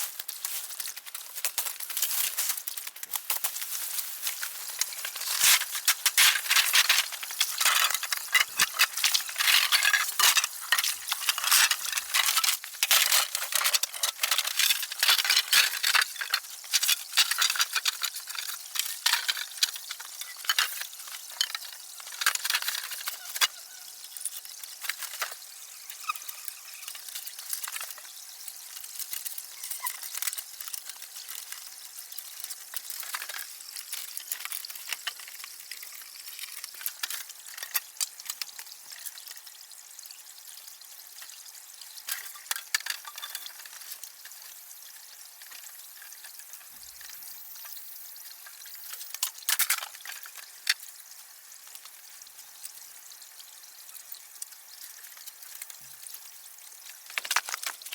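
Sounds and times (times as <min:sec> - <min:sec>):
rain pattering on tent fabric: 0:00.0 - 0:23.2, 0:54.4 - 0:57.9.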